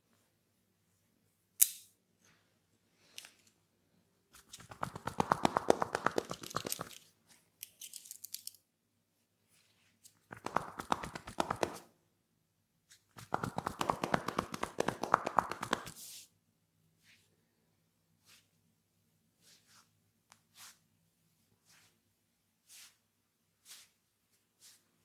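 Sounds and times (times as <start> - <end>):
hands rubbing oiled hair: 4.4 - 7.0, 10.2 - 11.9, 13.2 - 16.3, 22.6 - 23.0, 23.6 - 25.0.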